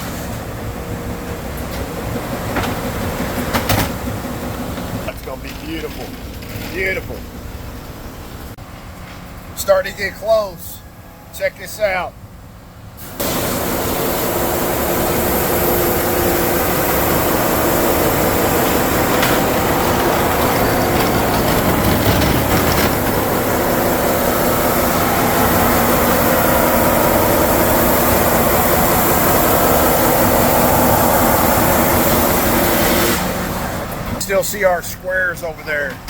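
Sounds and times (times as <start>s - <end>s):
surfacing machine grinding: 13.9s - 33.4s.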